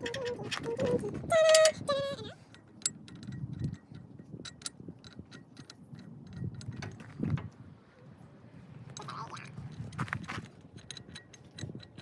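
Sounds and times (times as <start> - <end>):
metal shackles clicking and clinking: 0.0 - 7.6, 8.9 - 12.0.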